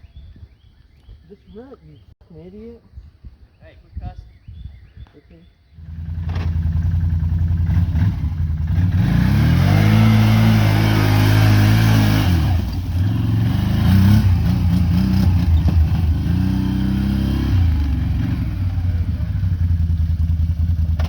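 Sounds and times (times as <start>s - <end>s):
vehicle engine revving: 5.8s - 21.0s.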